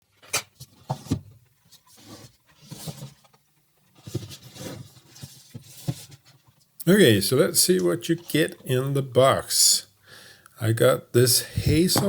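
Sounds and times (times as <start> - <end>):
cardboard box scraping and rubbing: 0.8 - 3.3, 3.9 - 6.4.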